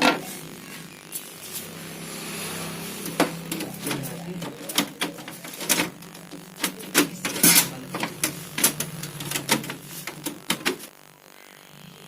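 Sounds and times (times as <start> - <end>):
steady low hum: 0.0 - 12.0
printer parts clicking and knocking: 3.0 - 10.9.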